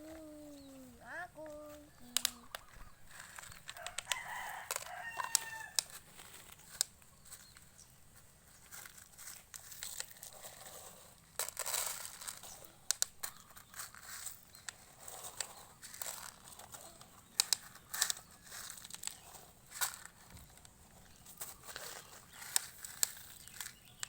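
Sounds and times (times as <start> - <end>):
chicken calls: 0.0 - 6.0
rustling crinkling noise: 0.0 - 24.0
sharp clicks: 1.4 - 6.0, 17.1 - 18.2.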